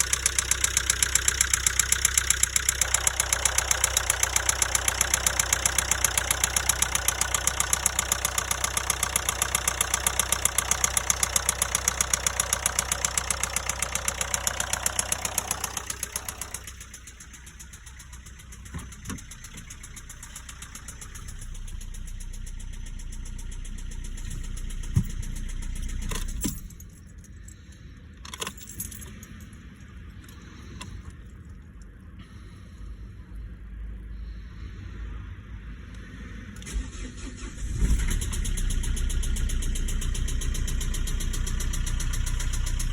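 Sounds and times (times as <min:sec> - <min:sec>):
diesel engine knocking: 0:00.0 - 0:26.8, 0:37.3 - 0:42.9
low hum: 0:00.0 - 0:42.9
scattered clicks and knocks: 0:18.1 - 0:20.4, 0:24.2 - 0:26.9.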